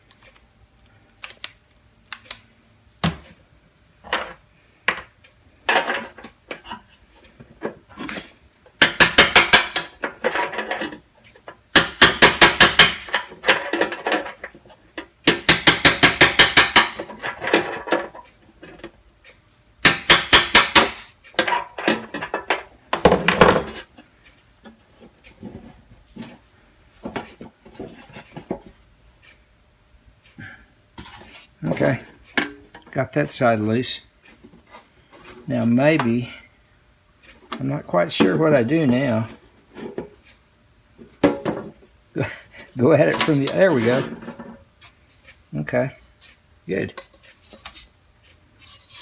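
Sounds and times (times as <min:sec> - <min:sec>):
hammer tapping sheet metal: 0:11.8 - 0:13.2, 0:15.3 - 0:17.1, 0:19.8 - 0:21.1.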